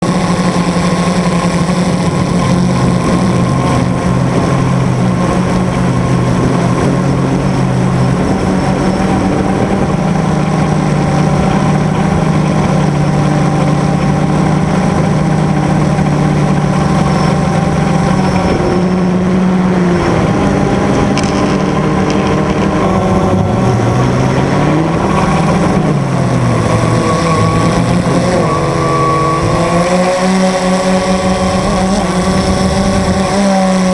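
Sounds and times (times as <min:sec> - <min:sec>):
engine running: 0:00.0 - 0:33.9.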